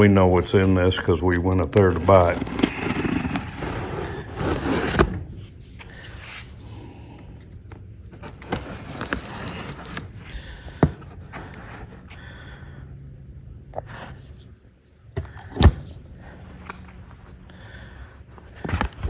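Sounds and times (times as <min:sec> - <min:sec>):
cardboard box scraping and rustling: 0:00.5 - 0:06.6, 0:08.2 - 0:12.1, 0:18.4 - 0:19.0.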